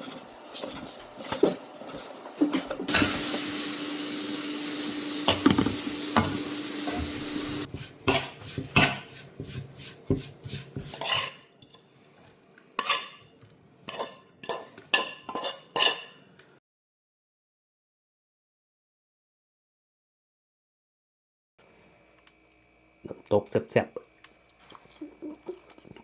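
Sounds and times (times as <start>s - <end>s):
food sizzling in a pan: 0.0s - 11.4s
metal spoon scraping a pan: 7.6s - 11.9s, 12.8s - 16.3s.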